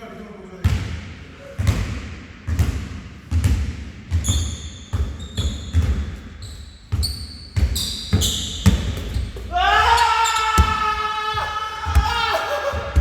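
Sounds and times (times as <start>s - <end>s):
basketball bouncing on gym floor: 0.6s - 13.0s
sneakers squeaking on hardwood: 3.4s - 13.0s.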